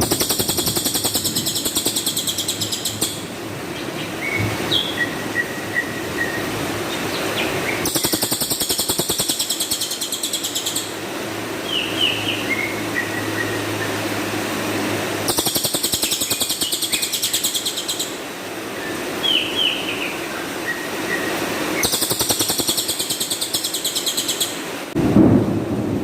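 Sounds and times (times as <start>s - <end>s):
bird downward-slurred chirps: 0.0s - 3.3s, 7.8s - 10.9s, 15.3s - 18.2s, 21.8s - 24.6s
songbird harsh rapid trills: 0.0s - 3.3s, 7.8s - 11.0s, 15.2s - 18.2s, 21.8s - 24.6s.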